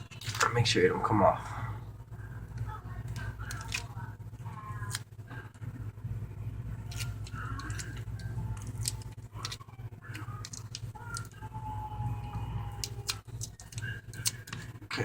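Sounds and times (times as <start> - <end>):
low steady hum: 0.0 - 15.0
tape handling clicks and crinkles: 2.5 - 4.1, 6.8 - 11.5, 12.2 - 14.8.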